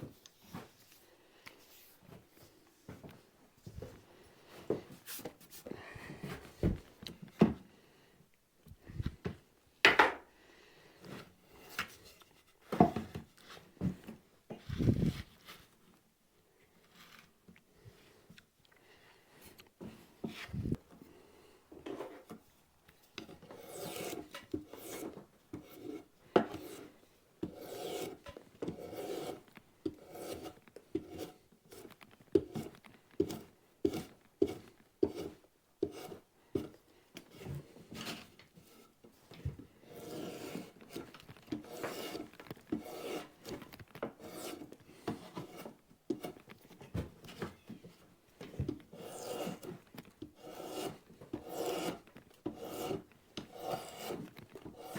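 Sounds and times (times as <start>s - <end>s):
drawknife scraping bark: 48.9s - 49.8s, 50.4s - 54.9s.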